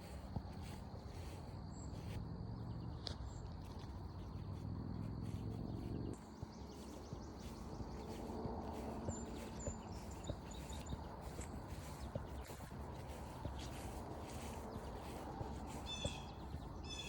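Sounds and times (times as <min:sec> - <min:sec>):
footsteps on forest trail: 0:00.0 - 0:17.0
high bird chirps: 0:14.4 - 0:17.0.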